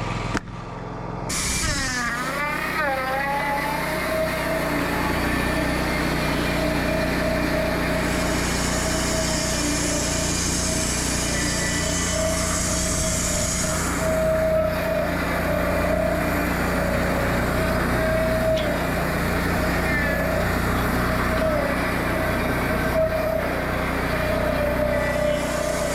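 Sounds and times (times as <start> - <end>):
band sawmill whine: 0.0 - 25.9
saw blade hissing through wood: 1.3 - 25.9.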